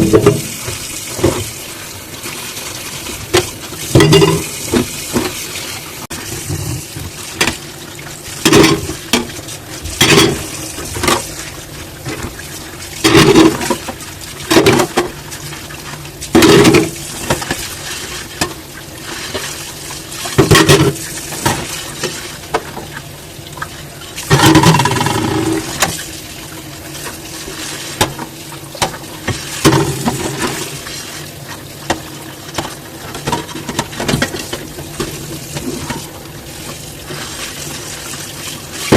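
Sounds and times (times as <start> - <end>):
dishes clinking: 4.0 - 4.5.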